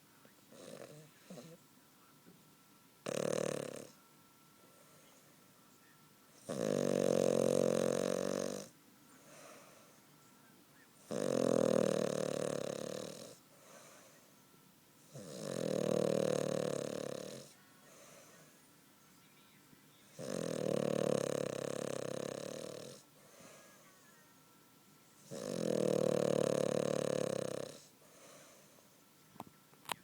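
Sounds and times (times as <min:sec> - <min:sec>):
dog snoring loudly: 0:00.5 - 0:01.6, 0:03.0 - 0:04.0, 0:06.4 - 0:09.7, 0:11.0 - 0:13.9, 0:15.0 - 0:17.6, 0:20.1 - 0:23.1, 0:25.2 - 0:28.7.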